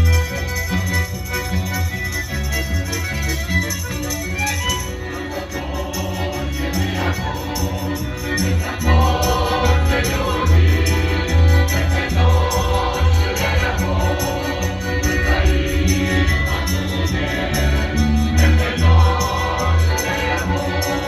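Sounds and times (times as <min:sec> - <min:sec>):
instrumental accompaniment: 0:00.0 - 0:21.0
folk choir singing: 0:04.7 - 0:21.0.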